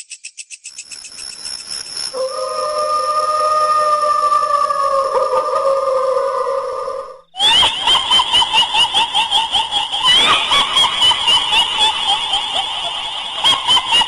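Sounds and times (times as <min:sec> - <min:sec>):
shrill falling tone: 0:02.2 - 0:07.6.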